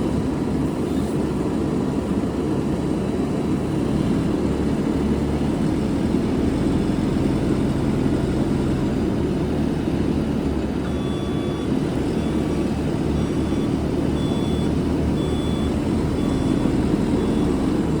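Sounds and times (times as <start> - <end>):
diesel engine running: 0.0 - 18.0
reverse alarm beeping: 10.8 - 17.9.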